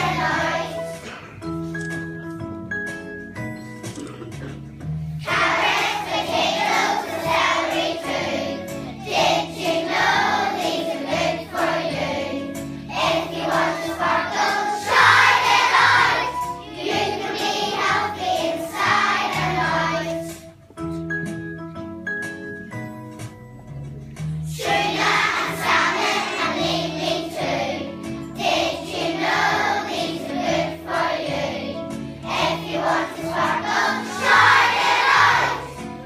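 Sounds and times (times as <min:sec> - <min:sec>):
children singing together: 0:00.0 - 0:01.2, 0:05.2 - 0:20.4, 0:24.5 - 0:36.0
instrumental accompaniment: 0:00.0 - 0:36.0.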